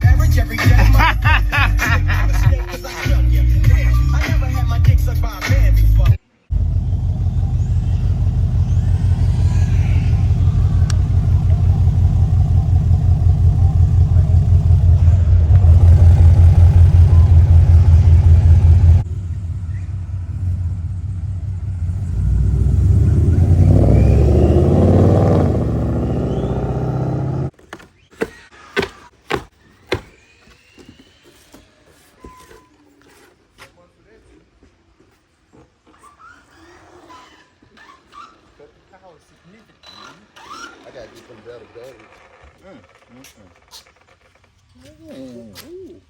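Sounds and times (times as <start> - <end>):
car engine running: 6.5 - 27.5.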